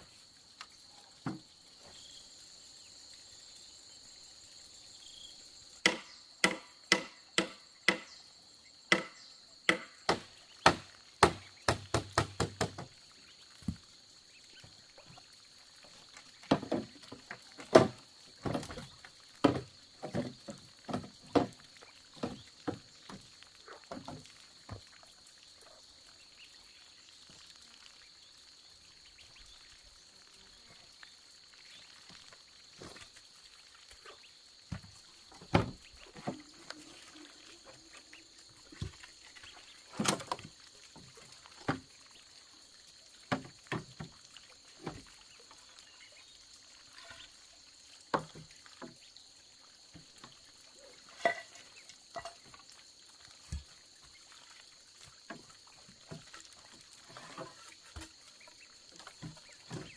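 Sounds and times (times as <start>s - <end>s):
high insect drone: 0.0s - 59.9s
bamboo being chopped: 5.8s - 8.2s, 8.9s - 12.9s.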